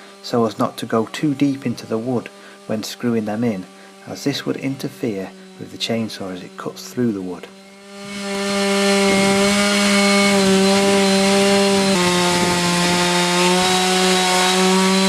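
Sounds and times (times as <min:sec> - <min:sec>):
chainsaw cutting log: 0:00.0 - 0:15.0.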